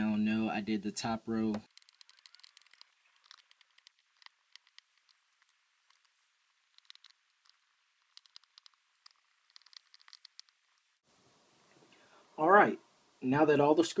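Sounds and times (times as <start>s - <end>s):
screwdriver clicking on screws: 1.6s - 5.2s.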